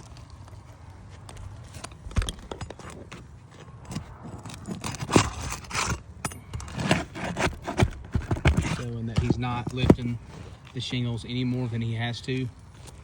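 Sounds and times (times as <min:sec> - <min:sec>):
bar scraping under shingles: 0:01.2 - 0:13.0.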